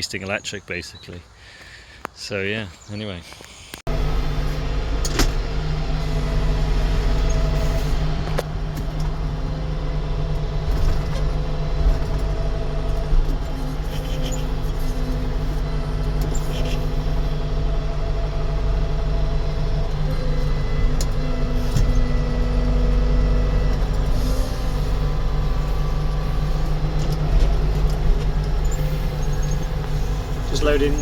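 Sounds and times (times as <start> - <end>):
engine droning steadily: 3.9 - 31.0.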